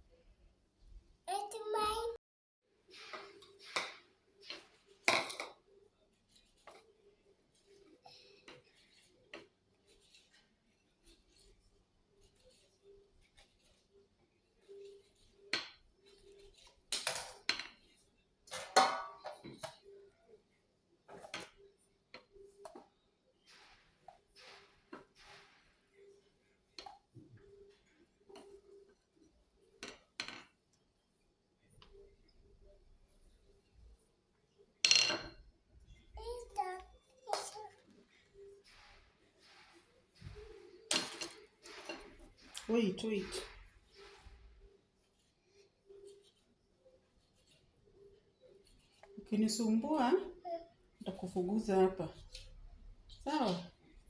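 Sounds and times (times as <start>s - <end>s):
kitchen utensils and dishes clinking: 14.7s - 19.8s, 38.4s - 44.5s.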